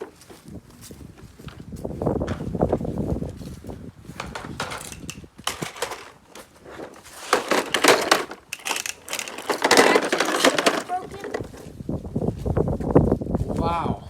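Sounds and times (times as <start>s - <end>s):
plastic toy mowers rattling: 4.2s - 11.7s.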